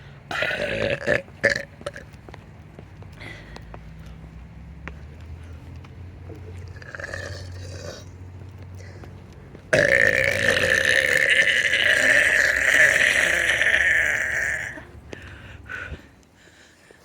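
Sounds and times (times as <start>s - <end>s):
person burping: 0.3s - 2.0s, 6.7s - 8.1s, 9.7s - 15.0s.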